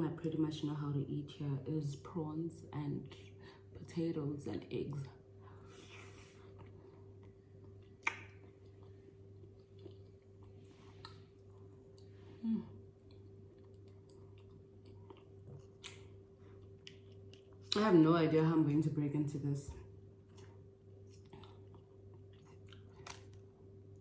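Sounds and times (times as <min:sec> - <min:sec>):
faint steady hum: 0:00.0 - 0:24.0
soft chewing: 0:05.5 - 0:17.9, 0:19.8 - 0:24.0
wet mouth sounds: 0:07.8 - 0:08.9.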